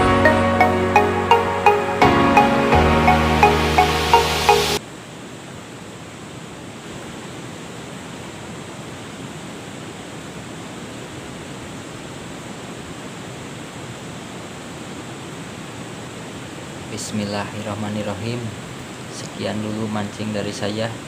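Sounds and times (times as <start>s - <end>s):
background music: 0.0s - 4.8s
river water rushing: 0.0s - 21.0s.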